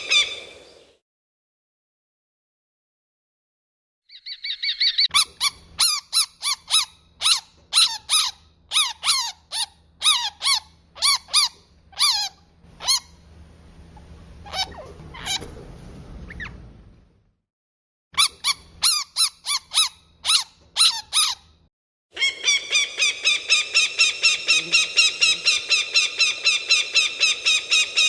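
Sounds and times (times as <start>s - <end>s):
high-pitched squeaky animal calls: 4.1s - 13.2s, 14.4s - 15.5s, 18.2s - 21.5s, 22.2s - 28.0s
faint low hum: 6.9s - 17.3s.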